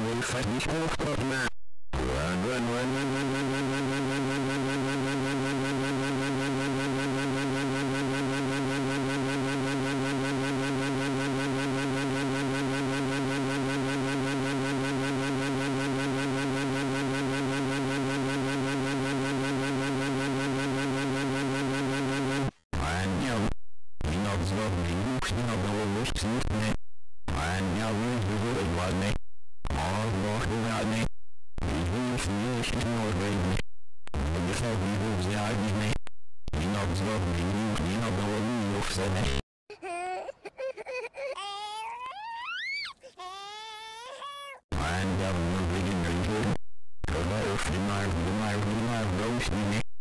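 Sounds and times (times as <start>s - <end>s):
synthesized electronic drone: 2.0s - 31.0s, 44.7s - 49.8s.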